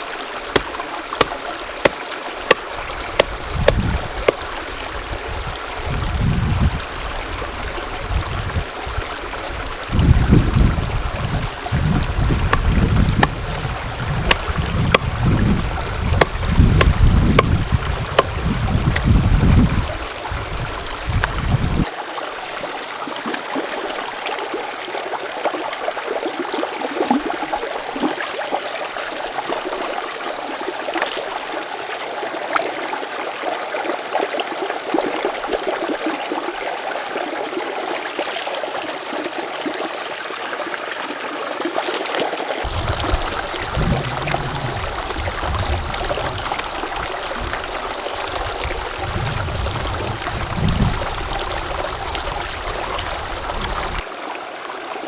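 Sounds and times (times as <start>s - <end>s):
small water splashes and clicks: 0.0s - 6.2s, 8.5s - 21.9s, 23.1s - 24.1s, 26.2s - 33.0s, 38.0s - 40.0s, 40.9s - 54.1s
mountain stream running: 0.0s - 55.0s
low rumbling surges: 42.7s - 54.0s.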